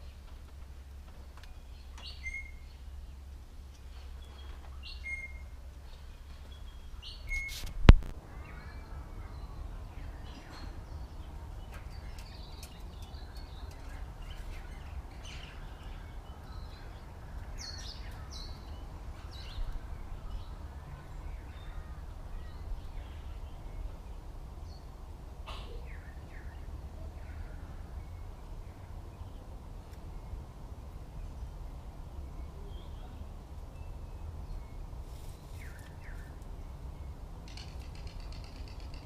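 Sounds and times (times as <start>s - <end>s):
wild birds chirping: 0.0s - 39.0s.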